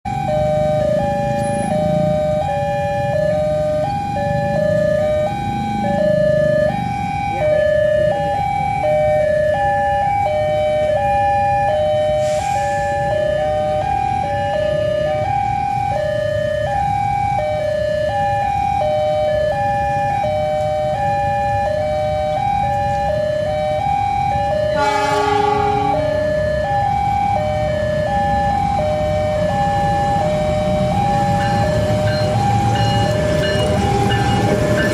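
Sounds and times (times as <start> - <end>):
level crossing warning siren: 0.1 - 34.9
train horn: 24.7 - 26.5.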